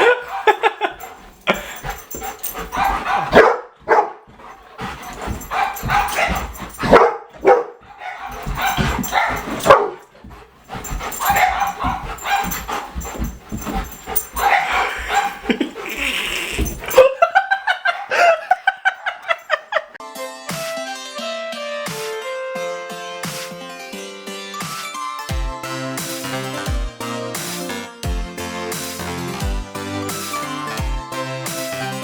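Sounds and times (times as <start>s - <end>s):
dog whimpering: 0.0s - 3.3s, 10.7s - 17.2s
dog barking and yipping: 0.0s - 20.0s.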